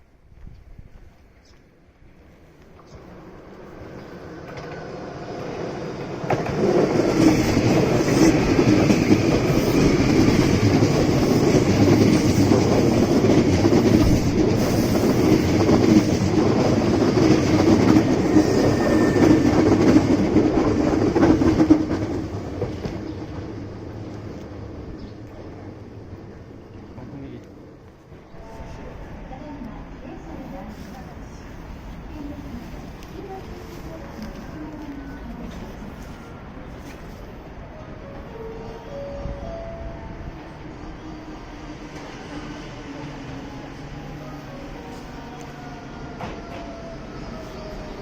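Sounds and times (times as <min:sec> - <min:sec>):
electric train passing: 0:01.9 - 0:48.0.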